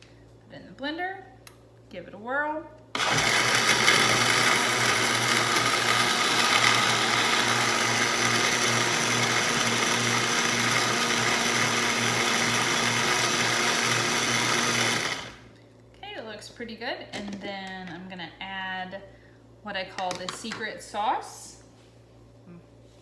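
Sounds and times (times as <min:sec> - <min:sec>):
blender running: 0:03.0 - 0:15.5.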